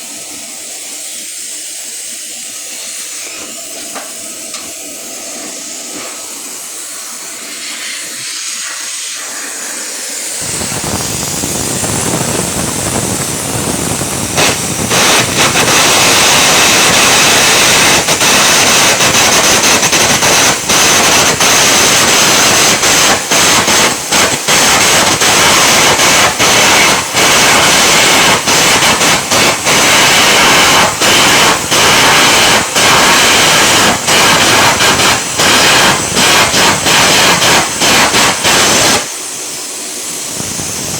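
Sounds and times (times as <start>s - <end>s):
welding arc crackling hiss: 0.0s - 40.9s.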